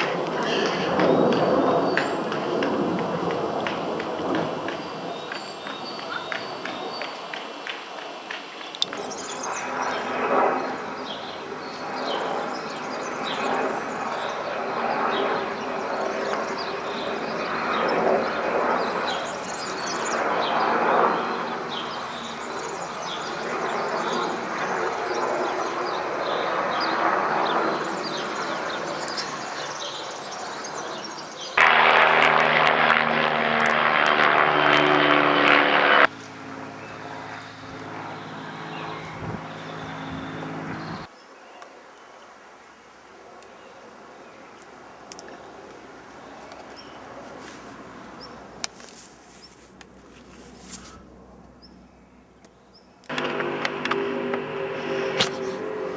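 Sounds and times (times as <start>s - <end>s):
aircraft engine rumble: 0.0s - 41.1s, 44.7s - 55.9s
loud harsh noise: 31.6s - 36.2s, 53.1s - 55.9s.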